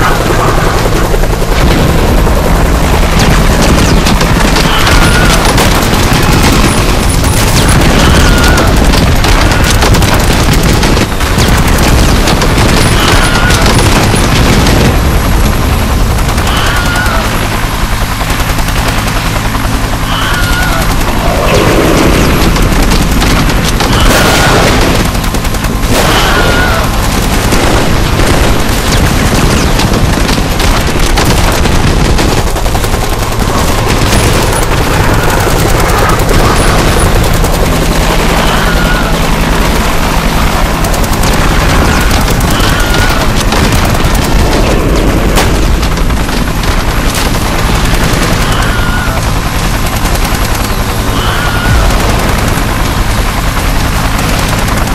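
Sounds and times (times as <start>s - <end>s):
rifle and machine-gun fire: 0.0s - 54.9s.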